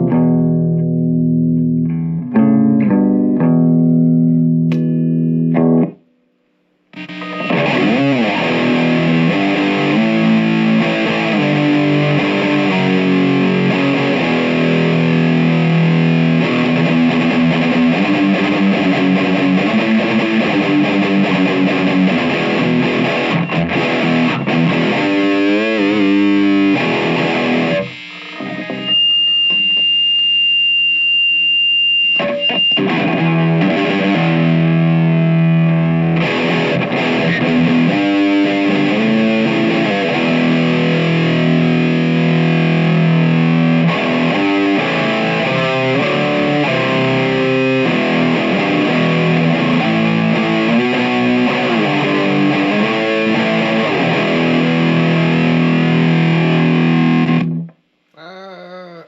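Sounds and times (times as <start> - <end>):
distorted electric guitar: 0.0 - 59.0
high steady tone: 27.6 - 32.8.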